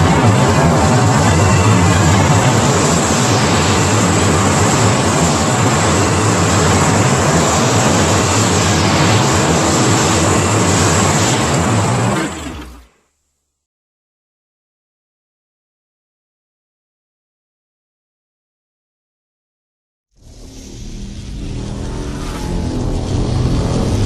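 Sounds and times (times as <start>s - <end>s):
deep hum: 0.0s - 12.8s, 20.2s - 24.0s
rushing roar: 0.0s - 12.9s, 20.2s - 24.0s.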